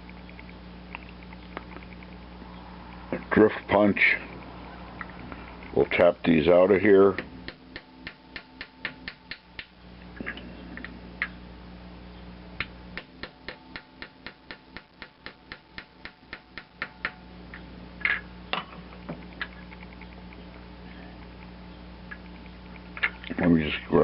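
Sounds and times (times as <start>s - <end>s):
hammer tapping on punch: 7.2s - 9.7s, 12.6s - 17.2s.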